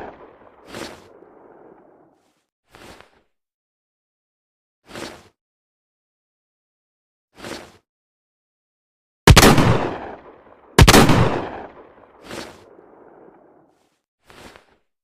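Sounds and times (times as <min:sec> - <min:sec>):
shotgun blasts: 0:09.3 - 0:12.0.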